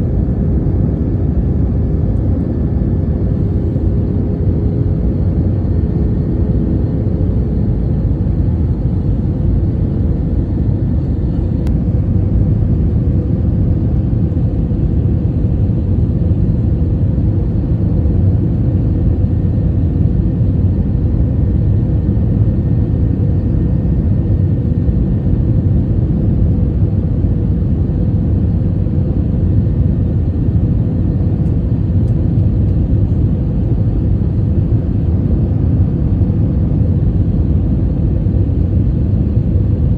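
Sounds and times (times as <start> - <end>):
airliner cabin engine rumble: 0.0 - 39.9
faint steady hum: 0.0 - 39.9.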